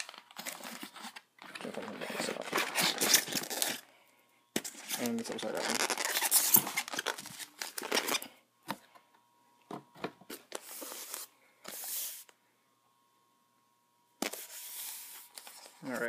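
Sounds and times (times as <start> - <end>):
packaging rustling and scraping: 0.0 - 3.9, 4.6 - 8.4, 10.2 - 12.3, 14.2 - 16.0.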